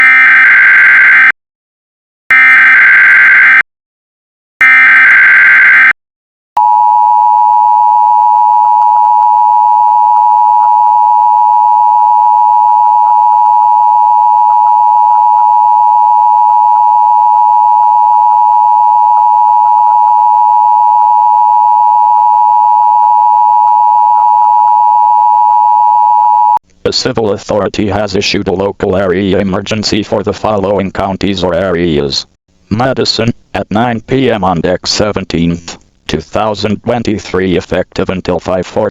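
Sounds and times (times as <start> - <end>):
steady two-tone attention signal: 6.6 - 26.6.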